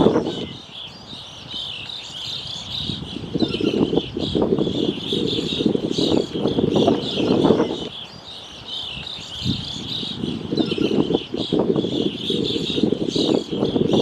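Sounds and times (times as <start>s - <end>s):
many birds chirping: 0.0s - 14.0s.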